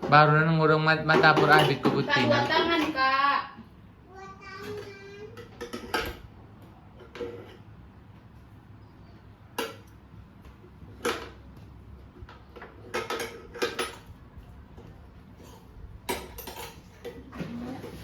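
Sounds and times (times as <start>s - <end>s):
dishes knocking and clinking: 0.0s - 3.0s, 4.6s - 7.7s, 9.5s - 10.0s, 10.9s - 14.2s, 15.4s - 18.0s.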